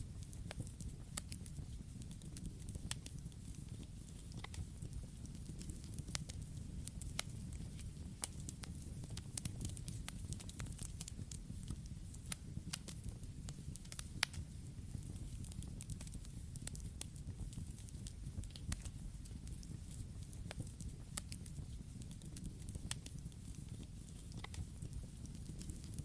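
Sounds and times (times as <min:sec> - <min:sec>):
burning wood crackling and popping: 0:00.0 - 0:26.0.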